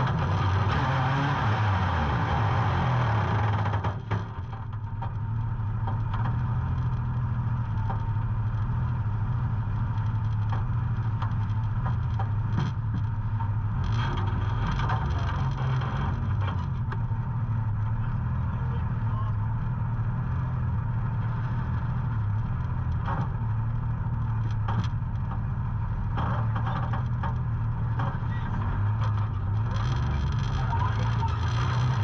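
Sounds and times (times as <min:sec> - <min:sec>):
utv engine running: 0:00.0 - 0:32.0
scattered clicks and knocks: 0:03.4 - 0:09.0, 0:09.8 - 0:17.1, 0:21.7 - 0:32.0.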